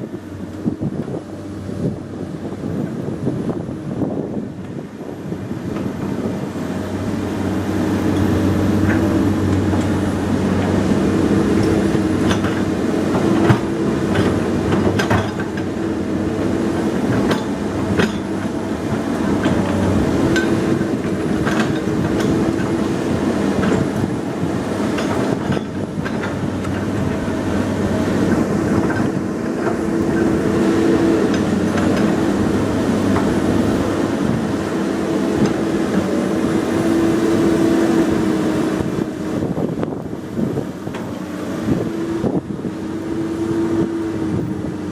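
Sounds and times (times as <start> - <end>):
excavator diesel engine running: 0.0 - 44.9.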